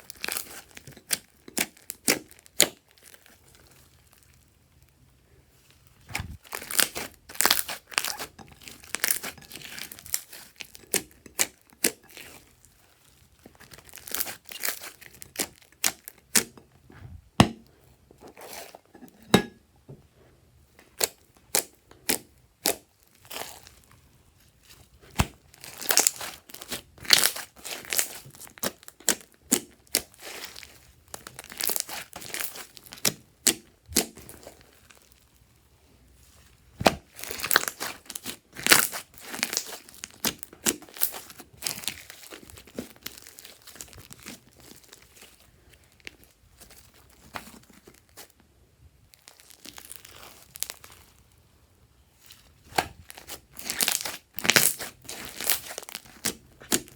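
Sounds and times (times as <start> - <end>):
slime sticky tearing: 6.0 - 12.6, 13.6 - 16.6, 24.6 - 35.2, 36.8 - 45.4, 49.2 - 51.2, 52.2 - 56.9.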